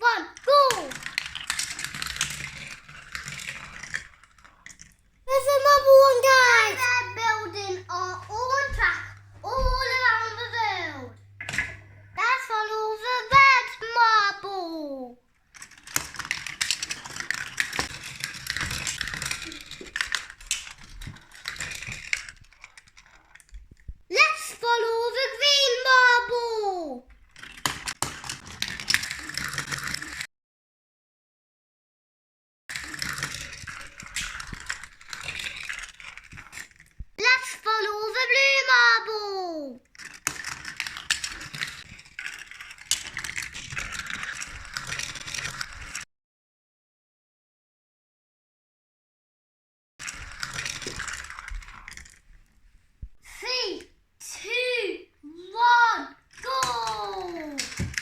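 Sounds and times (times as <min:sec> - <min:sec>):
marbles clattering on plastic track: 0:00.4 - 0:11.8, 0:15.5 - 0:23.8, 0:27.1 - 0:30.2, 0:32.7 - 0:38.7, 0:39.8 - 0:46.0, 0:50.0 - 0:52.4, 0:56.2 - 0:58.0.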